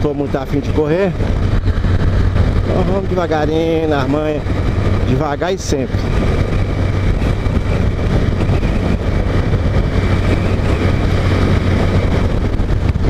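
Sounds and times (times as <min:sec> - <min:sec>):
motorcycle engine cruising: 0:00.0 - 0:13.0
wind and road noise: 0:00.0 - 0:13.0.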